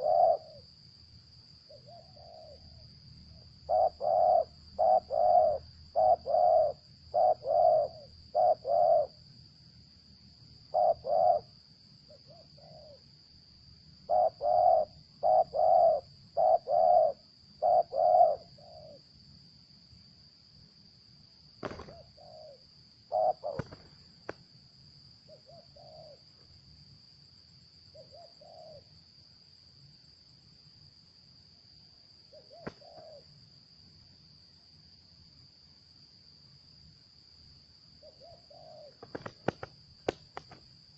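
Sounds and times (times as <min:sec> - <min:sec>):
doves cooing: 0:00.0 - 0:00.6, 0:03.7 - 0:09.2, 0:10.7 - 0:11.5, 0:12.1 - 0:13.0, 0:14.1 - 0:19.0, 0:21.6 - 0:24.4, 0:28.0 - 0:28.9, 0:32.4 - 0:33.3, 0:38.0 - 0:40.6
high insect drone: 0:00.0 - 0:40.9
sharp clicks: 0:23.6 - 0:24.4.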